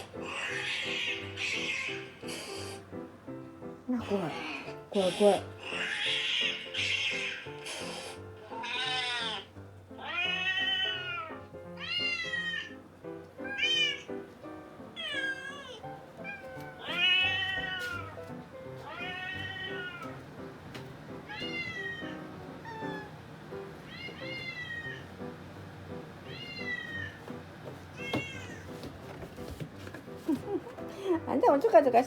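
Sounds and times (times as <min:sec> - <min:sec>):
soft background music: 0:00.0 - 0:32.0
kitten meowing: 0:00.2 - 0:02.1, 0:05.6 - 0:07.5, 0:08.4 - 0:12.8, 0:13.4 - 0:14.1, 0:15.0 - 0:18.1, 0:18.8 - 0:20.1, 0:21.3 - 0:23.1, 0:23.9 - 0:25.1, 0:26.2 - 0:27.2.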